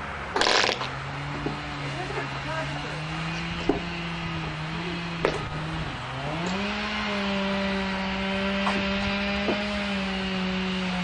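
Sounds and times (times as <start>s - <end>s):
skid loader engine revving: 0.0s - 11.0s
sharp knocks: 3.6s - 3.9s, 5.2s - 5.5s, 8.5s - 9.7s.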